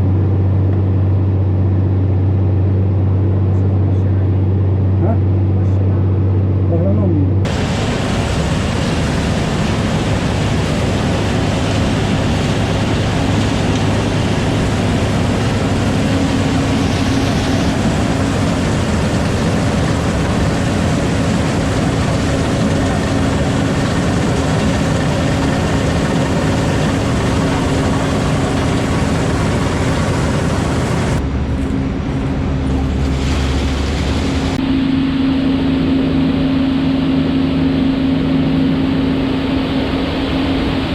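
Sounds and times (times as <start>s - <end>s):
deeper hum: 0.0s - 40.9s
tractor engine running: 7.5s - 33.0s.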